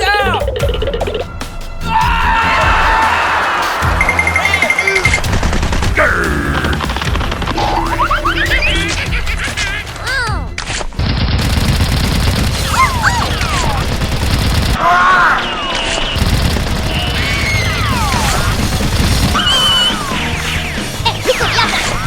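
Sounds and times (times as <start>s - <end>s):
music with low beat: 0.0s - 10.7s.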